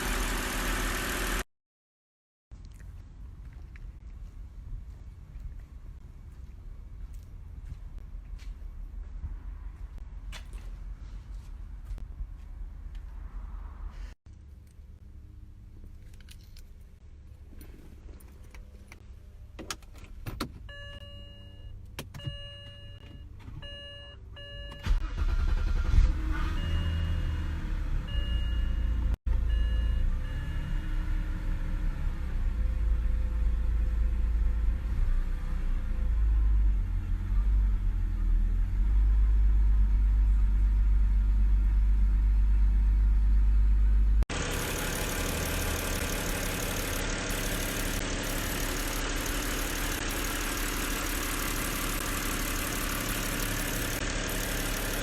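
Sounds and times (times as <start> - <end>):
car engine cranking and idling: 0.0 - 1.4, 24.3 - 29.5, 44.0 - 55.0
dashboard warning chimes: 20.6 - 25.0.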